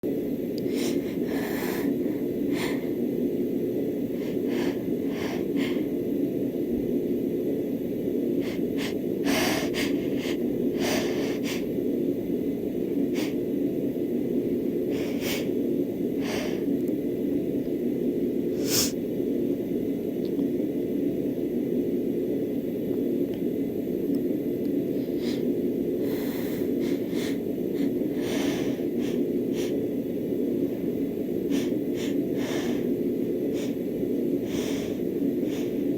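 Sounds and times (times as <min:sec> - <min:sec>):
steady low hum: 0:00.0 - 0:35.9
woman sniffing: 0:08.4 - 0:11.7, 0:13.2 - 0:13.4, 0:14.9 - 0:15.6, 0:16.2 - 0:16.7, 0:18.6 - 0:19.0, 0:25.0 - 0:29.8, 0:31.5 - 0:35.9
sharp hitching breaths: 0:25.0 - 0:29.9, 0:30.7 - 0:35.9.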